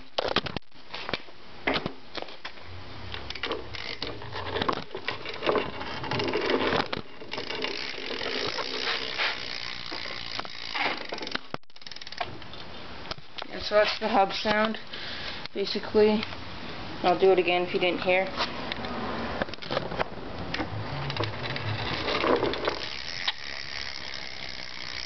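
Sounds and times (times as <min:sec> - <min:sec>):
bike hub freewheel ticking: 0:03.3 - 0:04.2, 0:07.1 - 0:12.3, 0:21.1 - 0:25.0.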